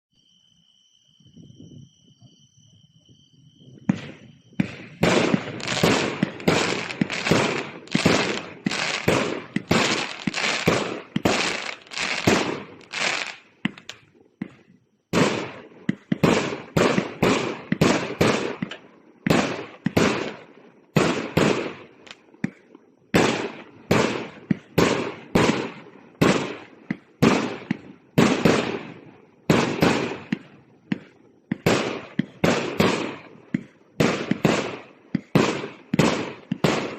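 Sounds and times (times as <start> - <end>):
firework cake shots crackling: 5.1 - 14.0.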